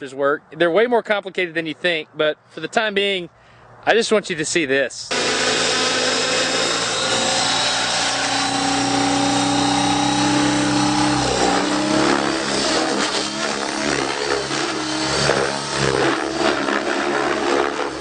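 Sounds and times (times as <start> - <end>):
model helicopter rotor whine: 5.1 - 18.0.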